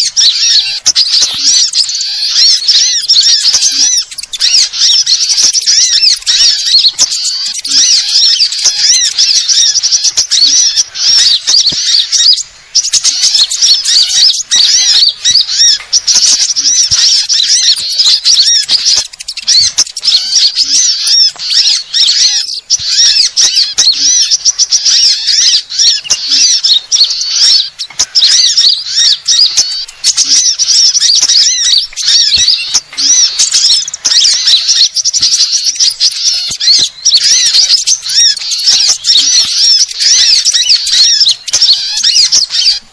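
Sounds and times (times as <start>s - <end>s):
songbirds chirping and trilling: 0.0s - 42.9s.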